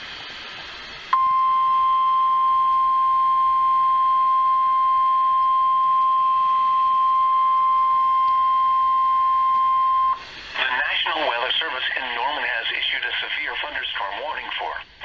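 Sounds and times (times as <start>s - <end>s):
steady high alarm tone: 1.1s - 10.2s.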